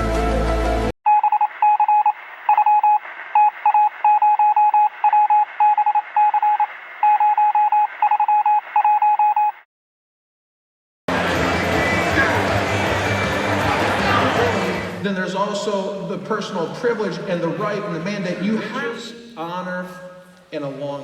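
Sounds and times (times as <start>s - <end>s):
short electronic beeps: 1.1s - 9.6s.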